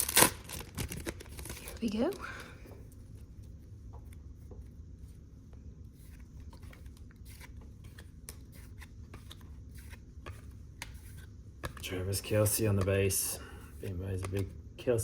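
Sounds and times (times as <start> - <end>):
low room hum: 0.0 - 15.0.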